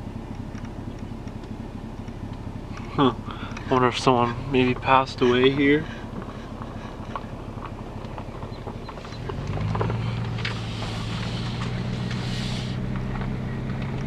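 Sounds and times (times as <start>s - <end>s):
truck engine running: 0.0s - 14.0s
high hiss: 10.5s - 12.8s.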